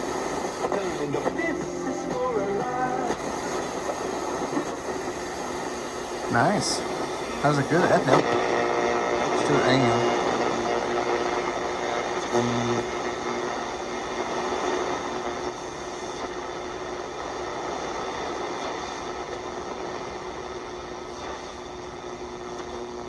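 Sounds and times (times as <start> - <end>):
faint hum tone: 0.0 - 18.3
radio static hiss: 0.0 - 23.0.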